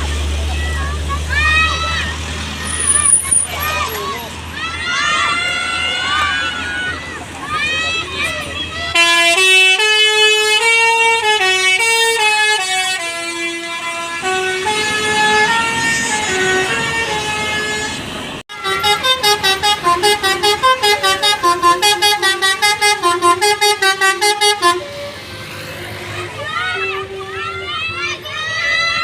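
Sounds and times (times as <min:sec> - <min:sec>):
musical bus horn melodies: 0:08.9 - 0:27.7.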